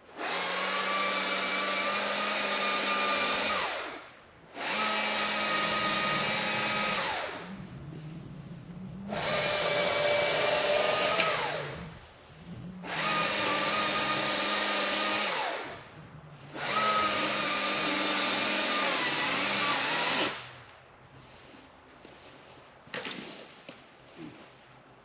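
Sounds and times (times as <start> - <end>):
battery chainsaw whining: 0.1 - 7.6, 9.1 - 11.9, 12.8 - 20.4
steady low hum: 5.5 - 14.8, 15.4 - 18.2.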